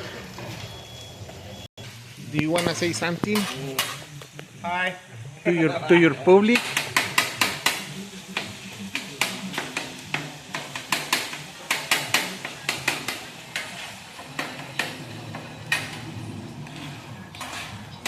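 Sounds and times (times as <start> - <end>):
utensil knocking and scraping cookware: 2.5 - 4.0, 8.4 - 18.0.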